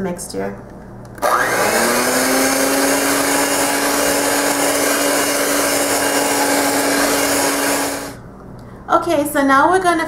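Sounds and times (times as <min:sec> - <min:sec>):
electric mixer motor whirring: 0:01.2 - 0:08.2.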